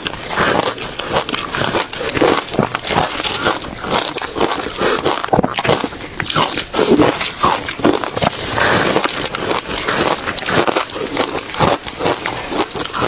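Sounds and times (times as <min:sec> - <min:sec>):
ice being chewed: 0:00.0 - 0:13.0.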